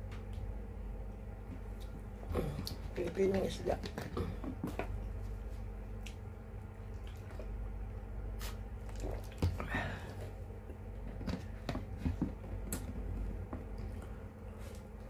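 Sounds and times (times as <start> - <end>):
steady low hum: 0.0 - 15.0
wet chewing and mouth clicks: 5.9 - 7.7, 8.3 - 9.7.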